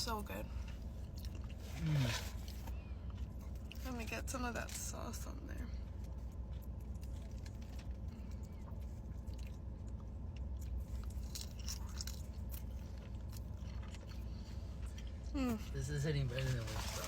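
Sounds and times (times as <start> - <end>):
person chewing food: 0.7 - 3.8, 5.8 - 15.4.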